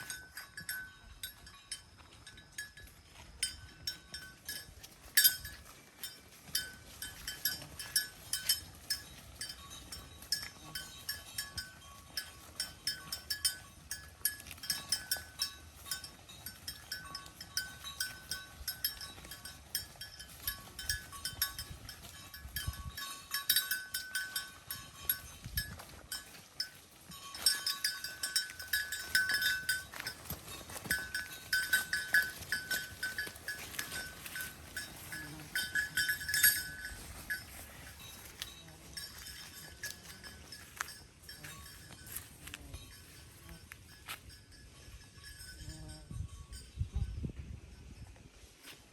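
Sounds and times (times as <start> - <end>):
cattle chewing hay: 3.5 - 42.9.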